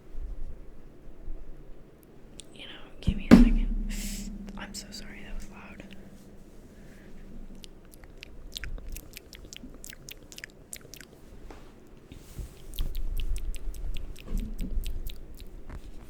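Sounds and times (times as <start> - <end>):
handling rumble near microphone: 3.0 - 7.8.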